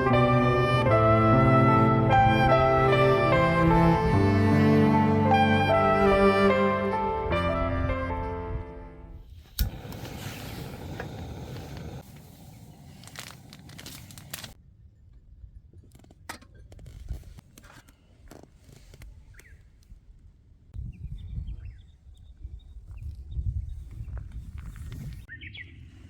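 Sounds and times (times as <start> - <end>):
wind buffeting microphone: 19.4 - 25.9.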